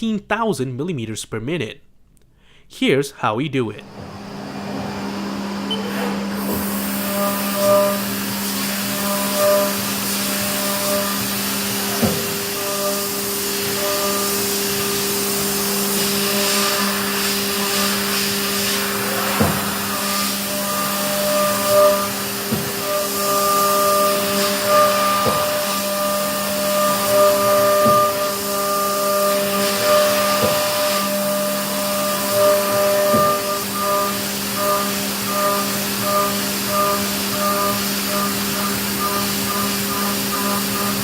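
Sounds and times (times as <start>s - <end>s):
milling machine whine: 3.9s - 41.0s
hiss: 6.4s - 41.0s.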